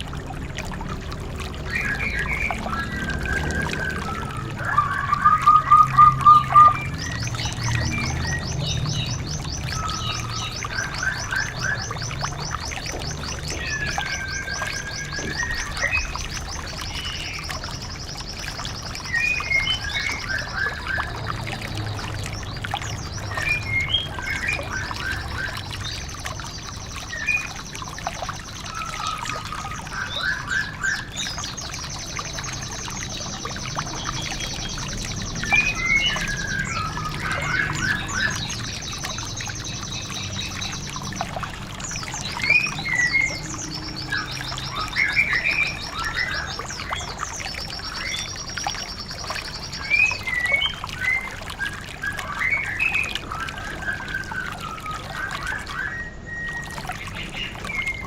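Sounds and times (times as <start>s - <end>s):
water trickling: 0.0s - 58.0s
bird chirping: 1.6s - 21.2s, 21.9s - 58.0s
bird trilling: 1.7s - 16.4s.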